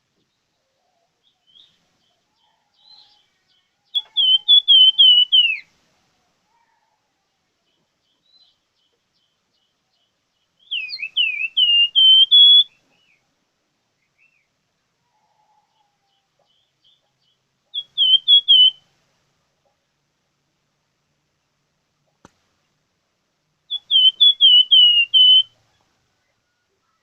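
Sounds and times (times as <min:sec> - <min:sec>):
songbird whistling: 0:03.9 - 0:05.7, 0:10.6 - 0:13.2, 0:17.7 - 0:18.8, 0:23.7 - 0:25.6.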